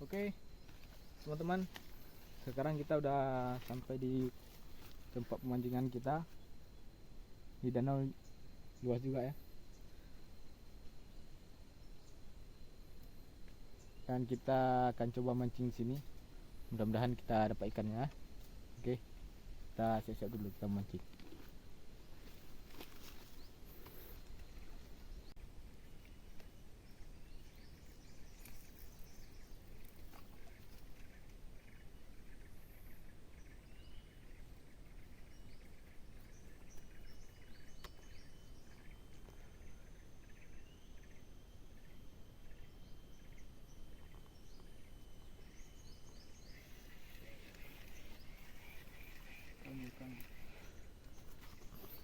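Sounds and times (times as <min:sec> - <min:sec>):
birds chirping: 0:00.0 - 0:52.0
high insect drone: 0:00.0 - 0:52.0.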